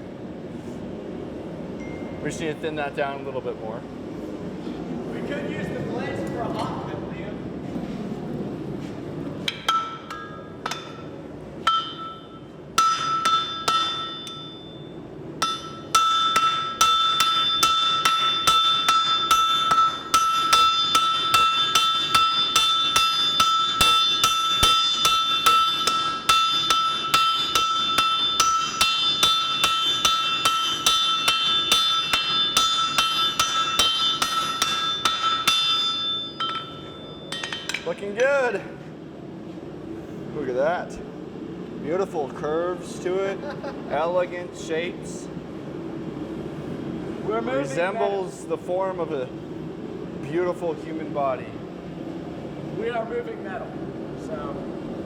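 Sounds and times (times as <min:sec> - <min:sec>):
bright anvil ring: 0:01.8 - 0:02.4, 0:09.5 - 0:38.2
hammer blows on hot steel: 0:11.7 - 0:38.0.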